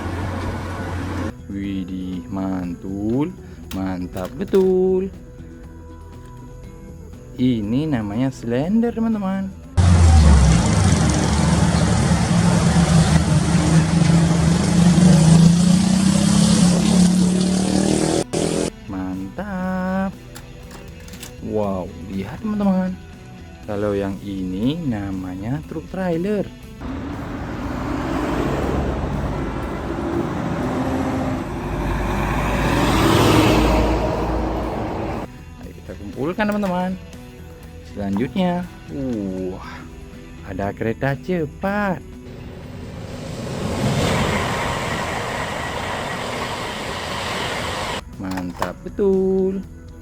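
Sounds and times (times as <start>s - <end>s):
road roller diesel engine: 0.0s - 1.3s, 9.8s - 18.7s, 26.8s - 35.3s, 42.3s - 48.0s.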